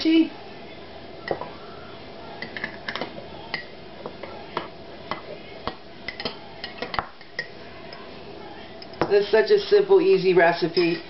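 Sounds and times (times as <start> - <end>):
spoon clinking against crockery: 10.6 - 11.0.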